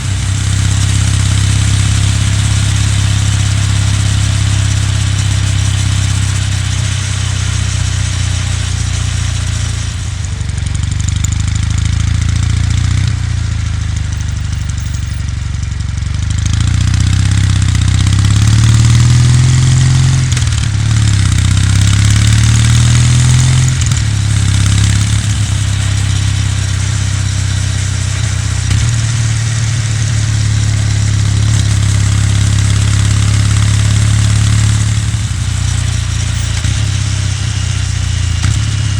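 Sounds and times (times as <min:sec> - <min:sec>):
motorcycle engine cruising: 0:00.0 - 0:38.9.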